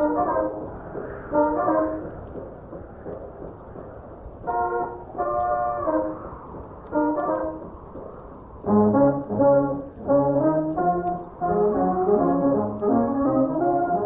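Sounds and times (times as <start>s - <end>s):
muffled dance band brass music: 1.3s - 2.1s, 8.7s - 14.0s.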